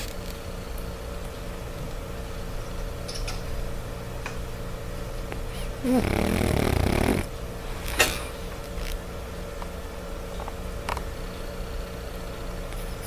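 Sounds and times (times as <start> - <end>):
dog snoring: 5.5 - 8.3.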